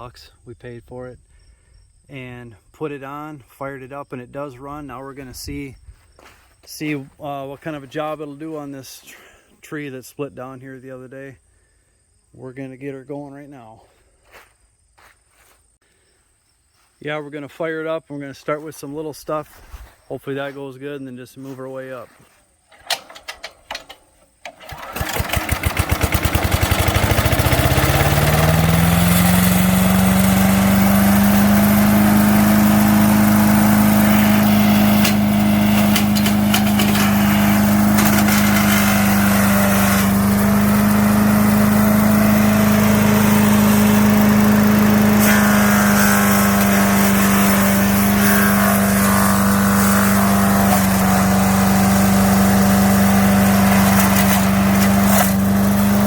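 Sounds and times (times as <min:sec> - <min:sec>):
wood chipper engine starting and running: 0:21.4 - 0:56.0.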